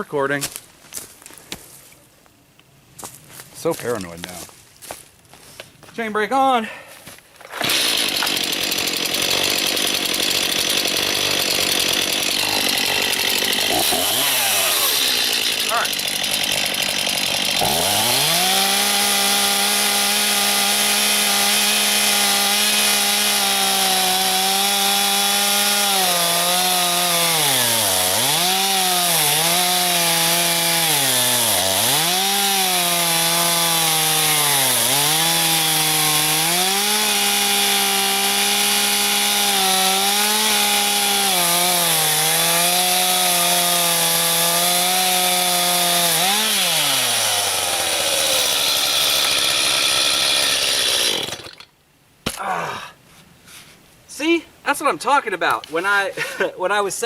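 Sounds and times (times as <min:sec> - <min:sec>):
chainsaw cutting wood: 0:07.4 - 0:52.4.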